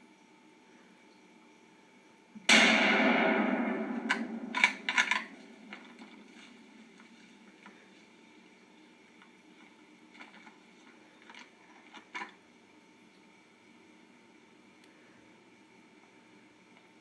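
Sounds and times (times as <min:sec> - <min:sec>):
rifle shot with echo: 0:02.5 - 0:06.3.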